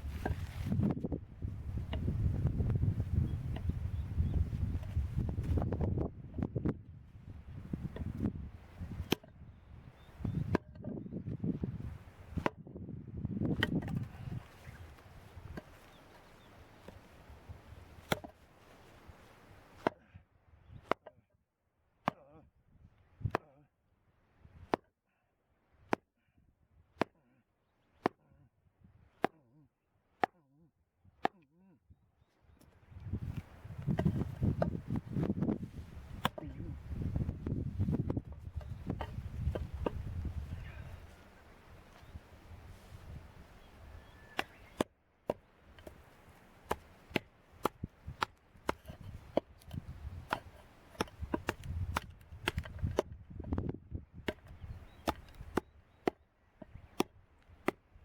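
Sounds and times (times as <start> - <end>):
wood being chopped: 0.0 - 0.9, 1.8 - 2.7, 7.8 - 8.2, 8.8 - 9.4, 10.3 - 11.0, 12.2 - 12.6, 13.4 - 14.2, 15.4 - 16.0, 16.8 - 17.1, 17.8 - 18.4, 19.6 - 20.1, 20.8 - 21.2, 22.0 - 22.4, 23.2 - 23.6, 24.6 - 24.9, 25.9 - 26.1, 27.0 - 27.2, 28.0 - 28.2, 29.2 - 29.4, 31.2 - 31.4, 32.6 - 40.4, 44.3 - 57.8.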